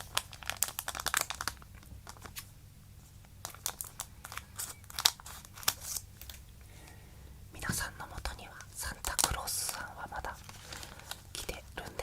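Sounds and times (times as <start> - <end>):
plastic wrapper crinkling and tearing: 0.0 - 2.5, 3.2 - 6.4, 8.9 - 12.0.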